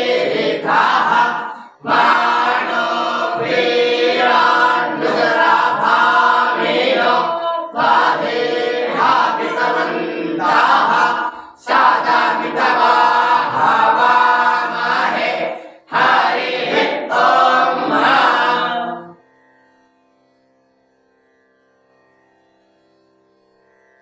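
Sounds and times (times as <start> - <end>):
children chanting together: 0.0 - 19.2.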